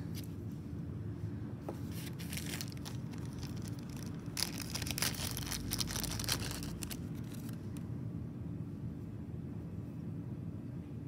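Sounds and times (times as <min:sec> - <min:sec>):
low background hum: 0:00.0 - 0:11.0
packaging rustling and crinkling: 0:01.8 - 0:07.8.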